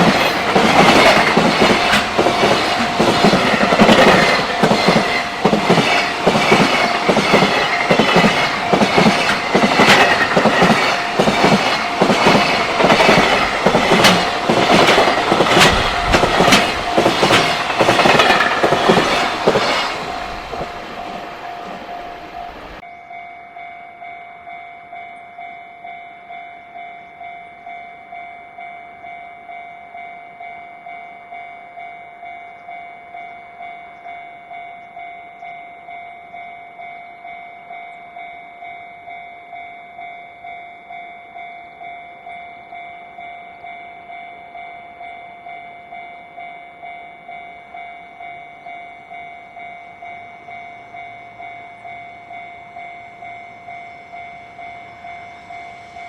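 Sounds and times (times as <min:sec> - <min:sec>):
level-crossing warning bell ringing: 0:00.0 - 0:56.0.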